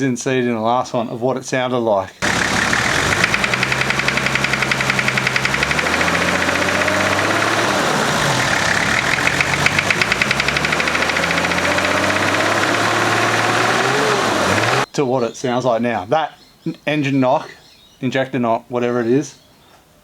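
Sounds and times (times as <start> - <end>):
diesel engine knocking and revving: 2.2 - 14.9.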